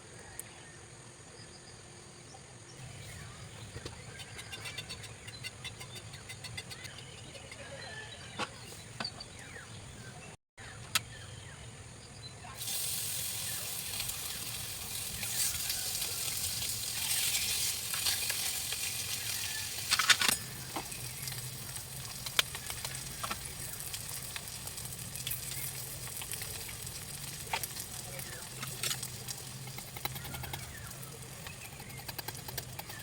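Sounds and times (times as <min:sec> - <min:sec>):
food sizzling in a pan: 0:12.6 - 0:29.8.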